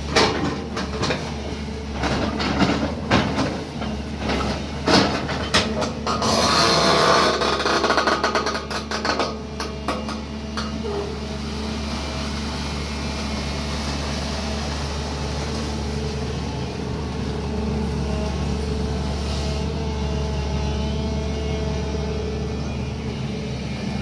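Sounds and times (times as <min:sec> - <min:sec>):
metal clanks and knocks: 0:00.0 - 0:11.2
excavator diesel engine running: 0:00.0 - 0:24.0.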